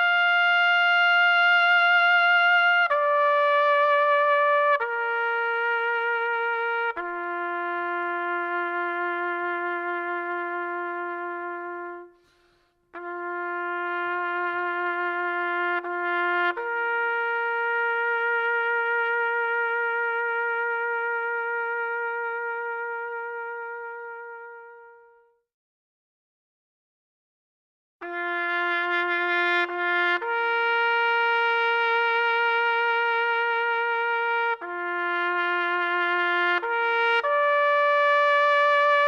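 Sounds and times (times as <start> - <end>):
slow trumpet-like music: 0.0 - 25.4, 28.0 - 39.0.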